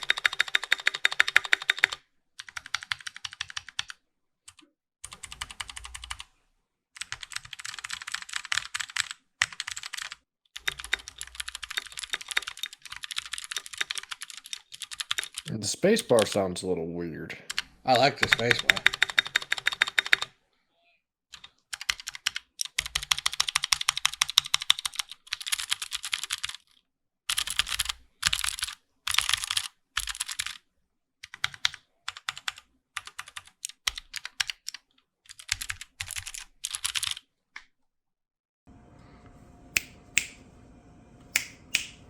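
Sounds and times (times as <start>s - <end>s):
mechanical keyboard typing: 0.0s - 6.3s, 7.0s - 16.4s, 17.5s - 20.3s, 21.3s - 26.7s, 27.3s - 30.6s, 31.2s - 37.2s
faint hum: 38.7s - 42.0s.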